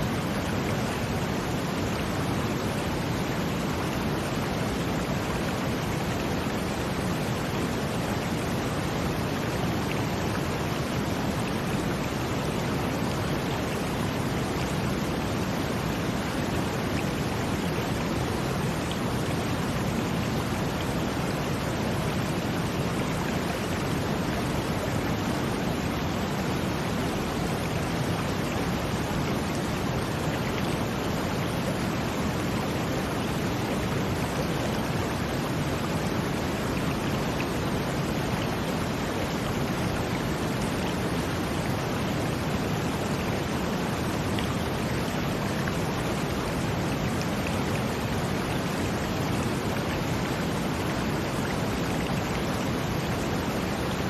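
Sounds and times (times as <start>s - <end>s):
running water: 0.0s - 54.0s.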